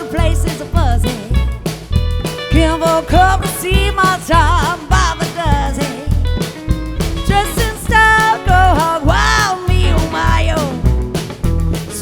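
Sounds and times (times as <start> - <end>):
person singing: 0.0 - 1.6, 2.4 - 6.2, 7.2 - 11.0
bass: 0.0 - 12.0
drum kit beat: 0.0 - 12.0
guitar: 0.0 - 12.0.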